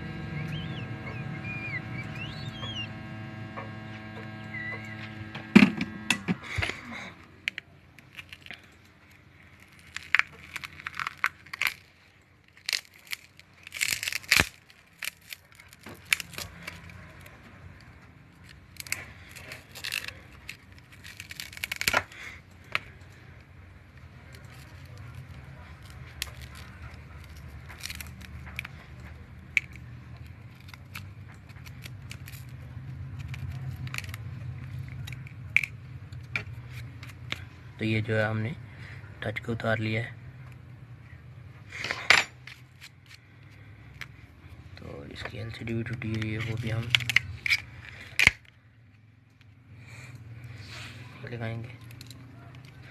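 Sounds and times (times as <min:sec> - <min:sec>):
low hum: 0:00.0 - 0:44.8
screen glass crackling and tearing: 0:06.1 - 0:23.2, 0:24.0 - 0:37.5, 0:45.1 - 0:49.0, 0:51.3 - 0:52.9.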